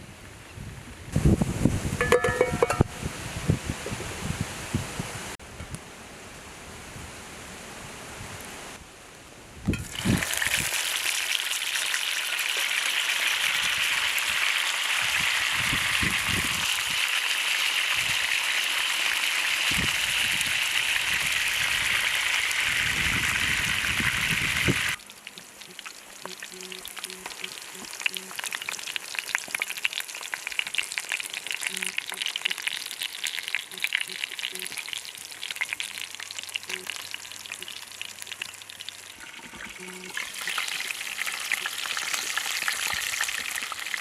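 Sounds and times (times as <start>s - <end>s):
utensil knocking in pan: 2.0s - 2.9s
food sizzling in hot oil: 9.7s - 44.0s.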